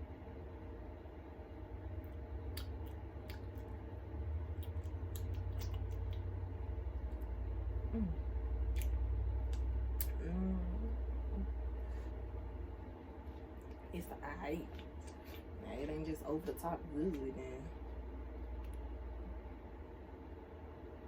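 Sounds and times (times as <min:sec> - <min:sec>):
steady low hum: 0:00.0 - 0:21.0
murmured voice: 0:07.9 - 0:08.2.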